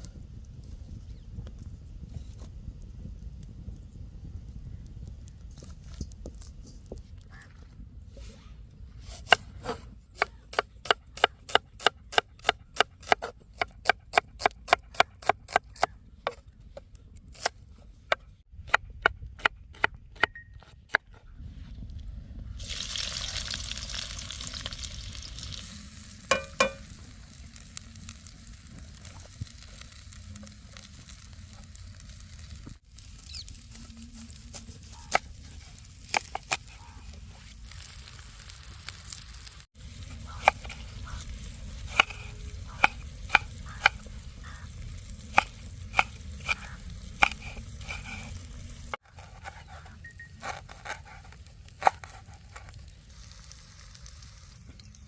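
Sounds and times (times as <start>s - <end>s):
curry sizzling in a pan: 22.6s - 29.0s.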